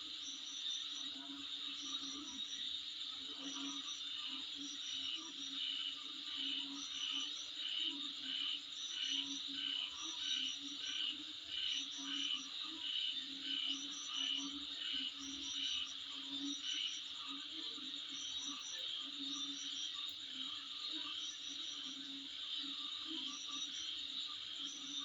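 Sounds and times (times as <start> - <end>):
insects chirping: 0.0 - 25.0.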